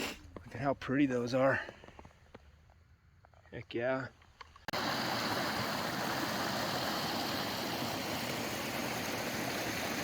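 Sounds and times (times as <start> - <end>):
running water: 4.7 - 10.0.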